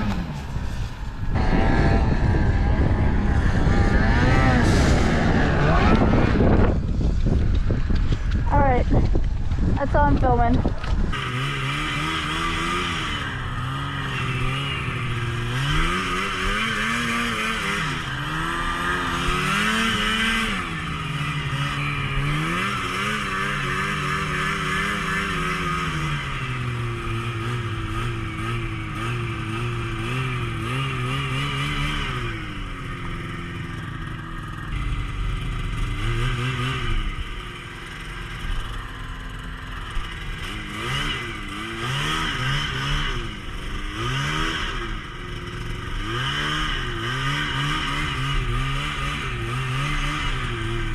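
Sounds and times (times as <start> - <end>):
snowmobile engine revving: 0.0 - 50.9.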